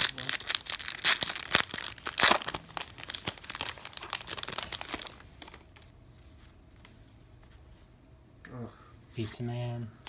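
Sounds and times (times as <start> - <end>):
wrapper crinkling and tearing: 0.0 - 5.9.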